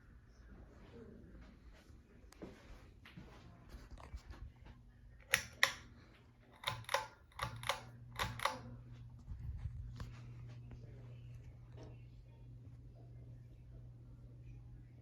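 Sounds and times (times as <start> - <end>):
ceiling fan motor humming: 3.2 - 15.0
pull-chain switch clicking: 5.3 - 5.8, 6.6 - 8.6.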